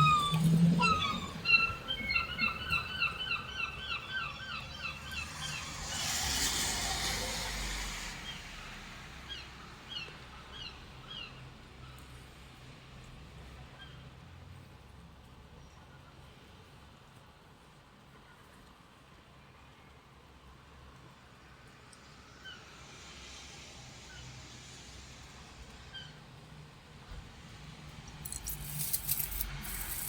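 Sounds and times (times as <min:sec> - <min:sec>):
seagull calling: 0:00.0 - 0:05.6
rush of noise: 0:04.7 - 0:09.4.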